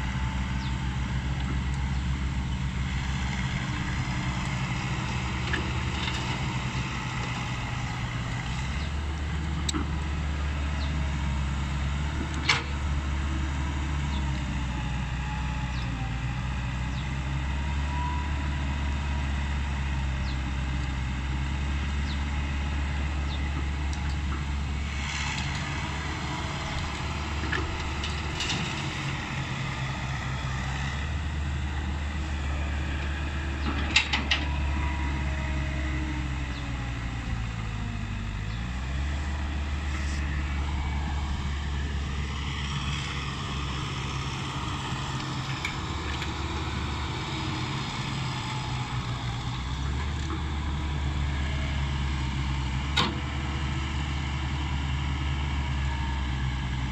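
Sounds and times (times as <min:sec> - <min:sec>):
excavator diesel engine running: 0:00.0 - 0:56.9.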